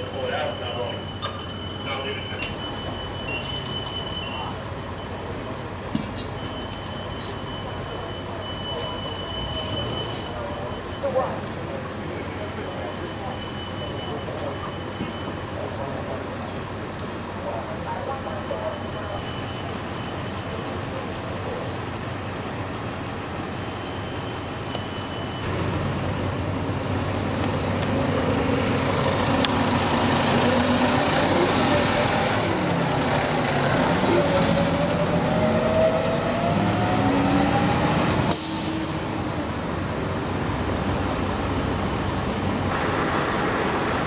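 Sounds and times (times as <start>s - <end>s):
heavy vehicle engine running: 0.0s - 44.0s
street hum: 0.0s - 44.0s.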